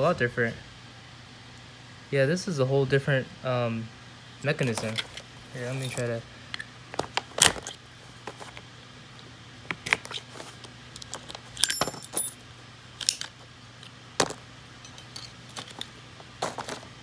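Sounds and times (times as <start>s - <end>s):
small metal parts clicking: 4.8s - 6.7s, 11.0s - 12.4s, 13.0s - 13.4s, 14.2s - 16.7s.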